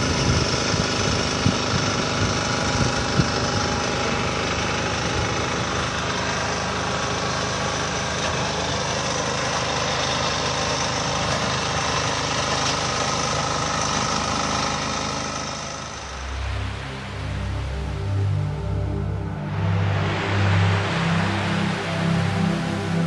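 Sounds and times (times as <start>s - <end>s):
engine idling: 0.0s - 23.0s
music: 16.0s - 23.0s.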